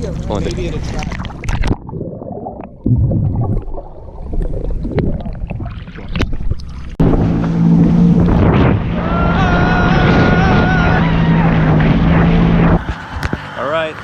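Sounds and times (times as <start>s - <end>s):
water splashing: 0.0s - 14.0s
wind noise on microphone: 4.3s - 13.6s
jet ski engine drone: 6.8s - 14.0s.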